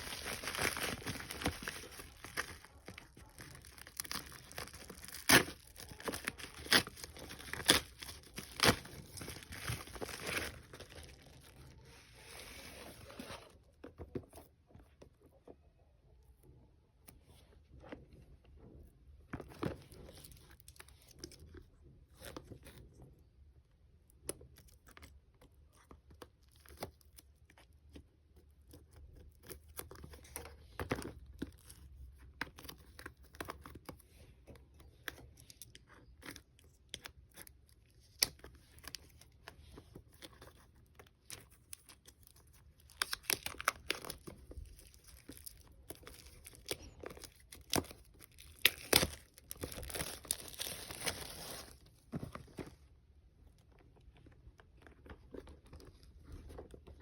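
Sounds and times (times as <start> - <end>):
packaging being torn and crinkled: 0.0 - 11.8, 40.2 - 51.8.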